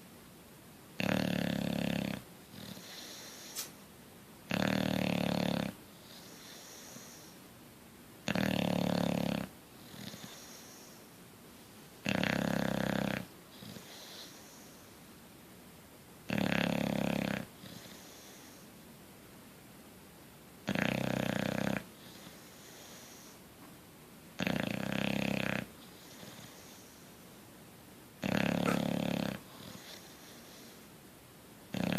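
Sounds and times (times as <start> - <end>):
dog snoring: 1.0 - 3.6, 4.5 - 7.4, 8.2 - 11.0, 12.0 - 14.9, 16.3 - 18.6, 20.6 - 23.4, 24.4 - 27.0, 28.2 - 30.8.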